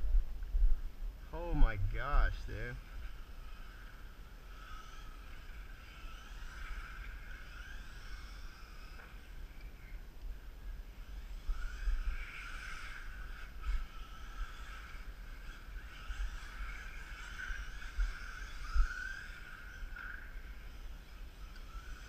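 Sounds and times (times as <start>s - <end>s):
low rumbling with thumps: 0.0s - 3.4s
toy car electric motor whine: 1.4s - 22.0s.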